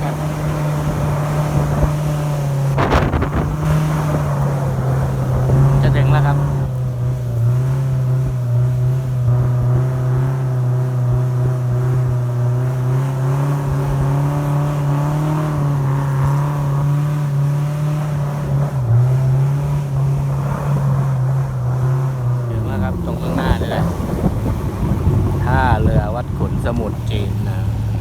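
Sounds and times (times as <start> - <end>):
speedboat engine drone: 0.0 - 28.0
water and wind rushing: 0.0 - 28.0.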